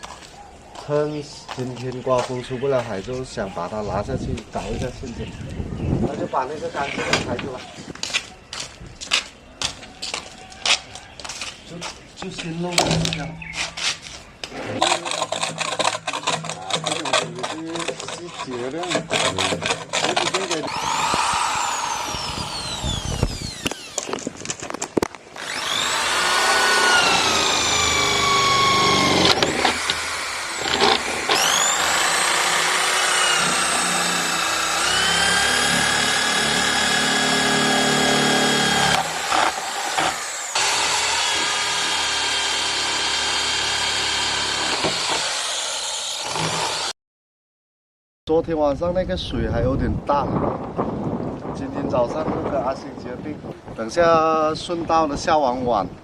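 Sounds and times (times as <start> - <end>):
power tool cutting pipe: 14.8 - 24.2, 25.4 - 47.0.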